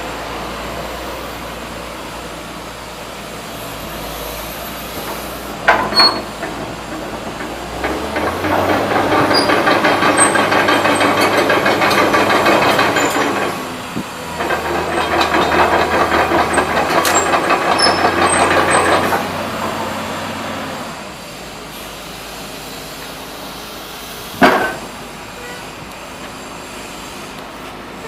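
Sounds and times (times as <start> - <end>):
excavator working under load: 0.0 - 28.0.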